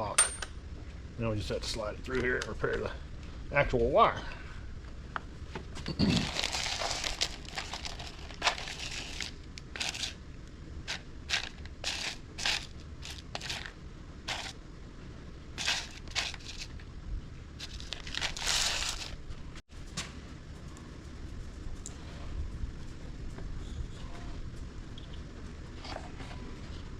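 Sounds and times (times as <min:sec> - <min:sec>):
plastic wire insulation crinkling: 0:06.0 - 0:14.6, 0:15.6 - 0:16.9, 0:17.6 - 0:19.6.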